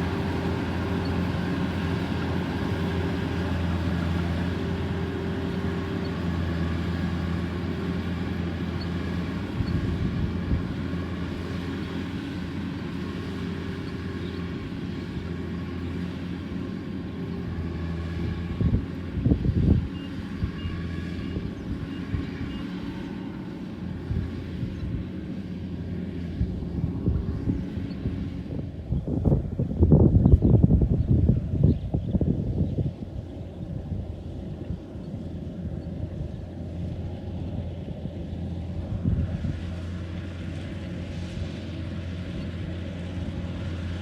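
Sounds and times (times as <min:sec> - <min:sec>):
harvester engine humming: 0:00.0 - 0:44.0.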